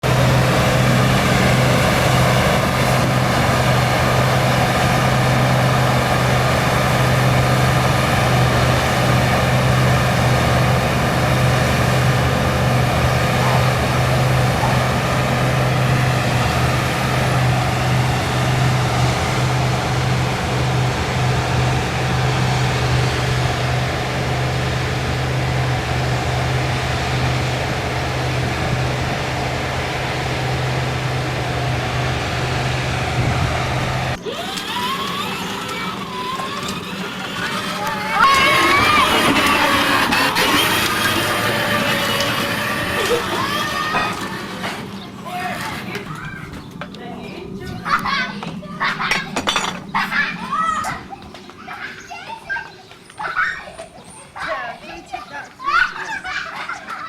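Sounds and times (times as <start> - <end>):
combine harvester engine droning: 0.0 - 52.1.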